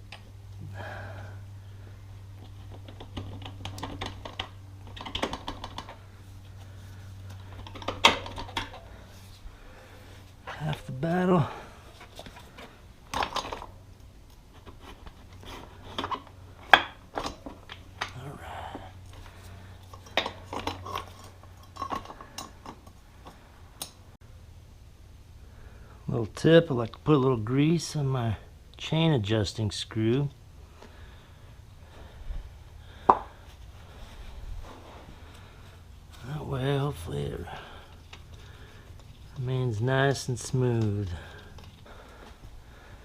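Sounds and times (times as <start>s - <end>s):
steady low hum: 0.0s - 43.0s
metal tools clinking: 19.8s - 23.0s.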